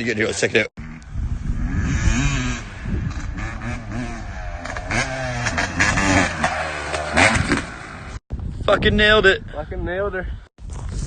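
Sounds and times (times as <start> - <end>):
dirt bike engine revving: 0.8 - 8.2.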